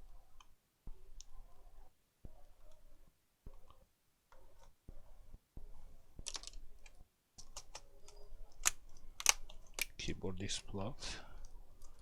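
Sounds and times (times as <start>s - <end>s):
laptop plastic parts clicking: 6.2s - 10.0s.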